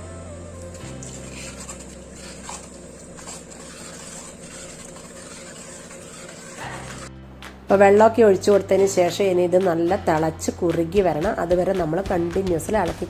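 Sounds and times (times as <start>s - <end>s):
soft background music: 0.0s - 13.0s
spoon stirring in a pot: 0.6s - 7.1s.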